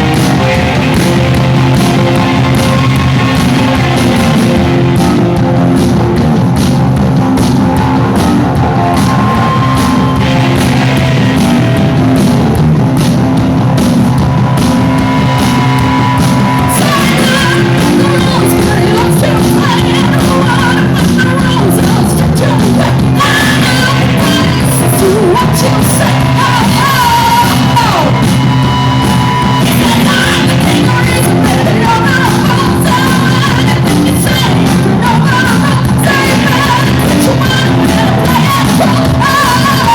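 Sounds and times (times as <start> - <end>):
punk rock band playing: 0.0 - 39.9
singer shouting vocals: 15.3 - 39.9.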